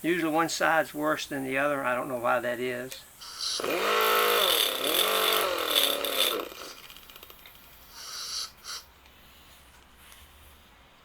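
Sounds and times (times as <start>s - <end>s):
hand grinder grinding metal chain: 3.6s - 7.3s.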